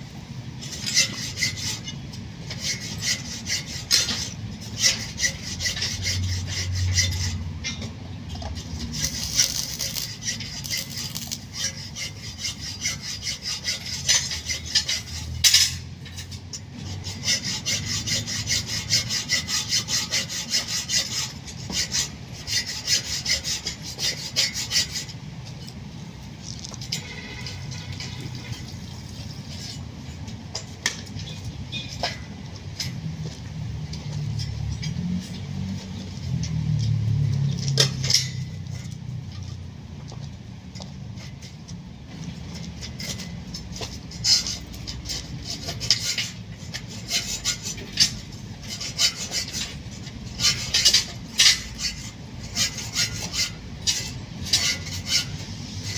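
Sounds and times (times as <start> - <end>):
hand tool rasping: 0.6 - 25.8, 42.5 - 55.9.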